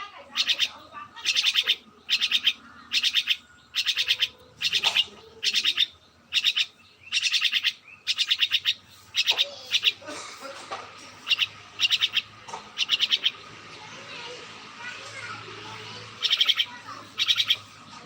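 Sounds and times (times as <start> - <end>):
small bird chirping: 0.0 - 10.0, 11.0 - 18.0.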